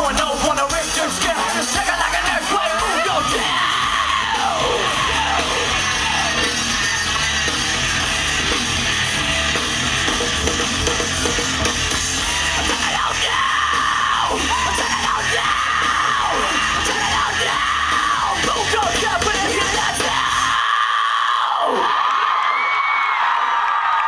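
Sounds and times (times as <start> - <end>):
person yelling lead vocals: 0.0 - 7.0, 12.2 - 22.0
rock band guitars and drums: 0.0 - 21.8.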